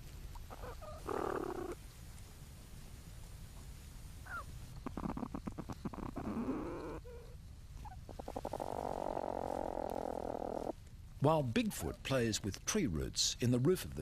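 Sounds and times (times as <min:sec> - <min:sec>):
platypus purring bursts: 0:00.7 - 0:01.8, 0:04.3 - 0:07.2
steady buzzing purr: 0:04.9 - 0:07.4.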